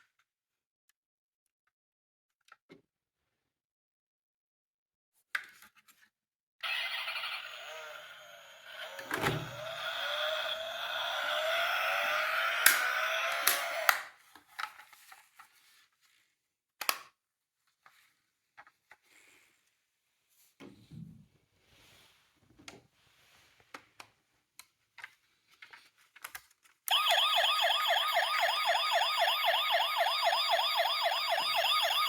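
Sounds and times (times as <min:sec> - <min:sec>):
toy siren wail: 0:06.6 - 0:14.1, 0:26.9 - 0:32.0
sharp clicks: 0:12.6 - 0:14.0.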